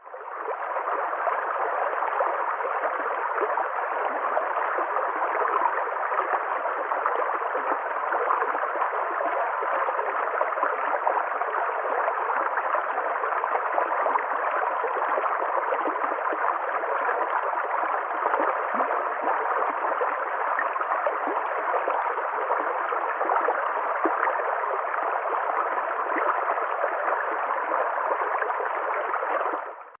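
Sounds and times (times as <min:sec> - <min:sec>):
stream water gurgling: 0:00.0 - 0:30.0.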